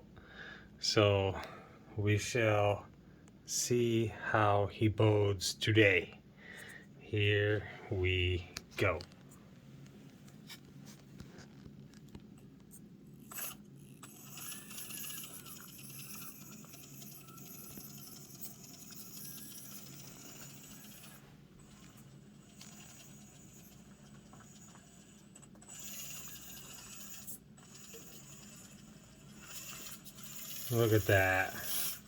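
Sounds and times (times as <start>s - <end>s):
small electric motor whine: 13.2s - 32.0s.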